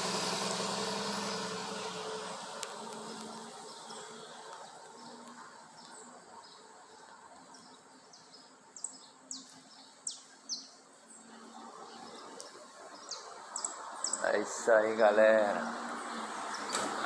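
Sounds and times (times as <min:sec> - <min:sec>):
vehicle passing: 0:00.0 - 0:05.2, 0:13.0 - 0:17.0
small bird chirping: 0:05.0 - 0:11.3, 0:11.9 - 0:14.3.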